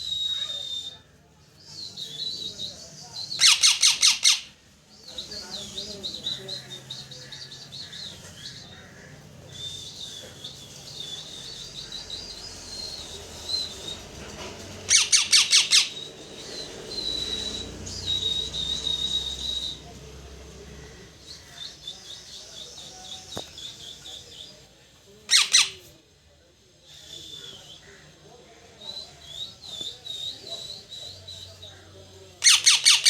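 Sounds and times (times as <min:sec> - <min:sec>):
parrot chirping trills: 0:03.3 - 0:04.5, 0:14.8 - 0:19.8, 0:25.3 - 0:25.8, 0:32.4 - 0:33.0
parrot squawks: 0:03.4 - 0:04.5, 0:14.9 - 0:16.0, 0:25.3 - 0:25.8, 0:32.4 - 0:33.0.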